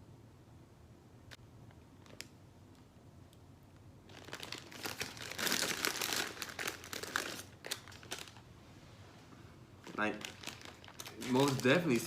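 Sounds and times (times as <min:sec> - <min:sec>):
chip bag rustling: 0:04.1 - 0:08.4, 0:09.8 - 0:12.0.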